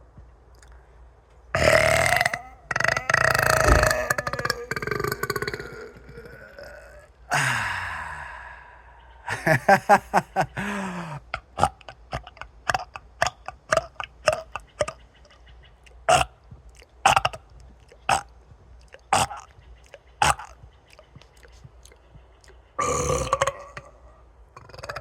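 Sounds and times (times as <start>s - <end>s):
throat gulping clicks: 1.6s - 7.1s, 11.3s - 24.0s, 24.6s - 25.0s
man burping: 1.6s - 8.7s, 19.1s - 19.5s, 22.8s - 24.0s, 24.6s - 25.0s.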